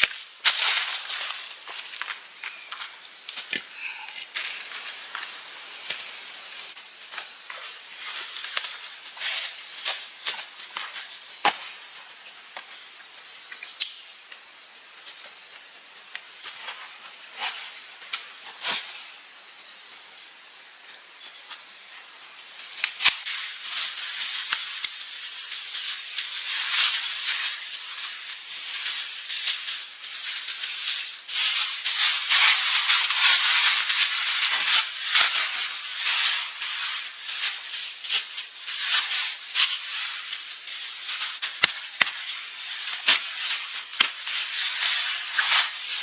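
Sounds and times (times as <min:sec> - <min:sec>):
rustling and crackling: 0:00.0 - 0:12.8, 0:22.0 - 0:46.0
sharp snaps and clicks: 0:13.6 - 0:14.4, 0:41.2 - 0:42.2.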